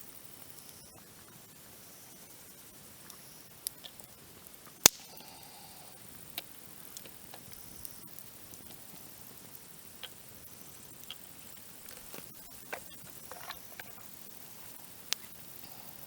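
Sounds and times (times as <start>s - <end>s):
campfire crackling and popping: 0.2s - 16.0s.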